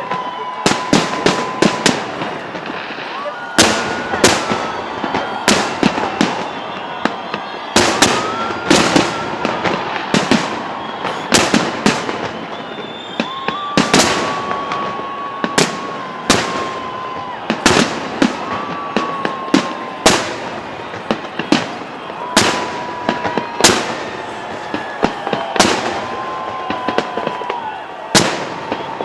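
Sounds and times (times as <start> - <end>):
firework bangs: 0.0 - 29.0
firework whistling: 0.0 - 29.0.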